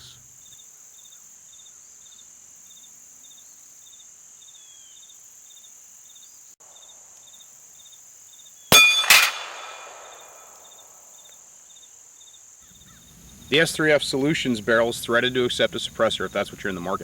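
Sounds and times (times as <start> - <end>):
insects chirping: 0.0 - 17.0
loud metallic clangs: 8.7 - 10.5.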